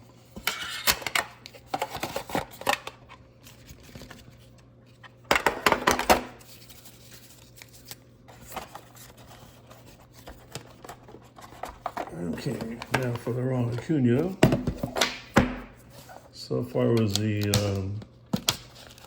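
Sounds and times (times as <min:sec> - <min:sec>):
cards and packaging rustling: 0:00.2 - 0:19.0.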